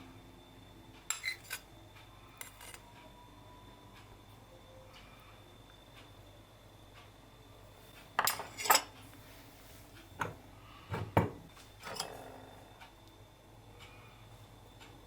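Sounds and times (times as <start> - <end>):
dishes and cutlery clattering: 8.2 - 8.9, 11.8 - 12.2.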